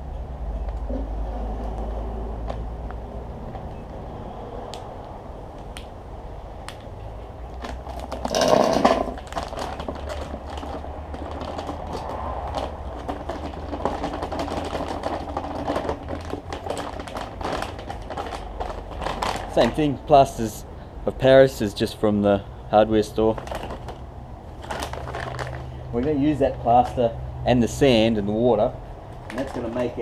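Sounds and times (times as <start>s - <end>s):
small clicks and crackles: 7.6s - 19.8s
dry materials rustling: 7.6s - 20.1s, 23.2s - 26.9s, 29.2s - 30.0s.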